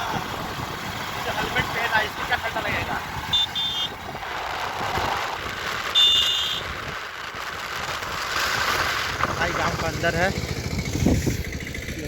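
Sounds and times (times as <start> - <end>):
motorcycle engine: 0.0 - 12.0
wind noise: 0.0 - 12.0
short high-pitched beeps: 3.3 - 3.9.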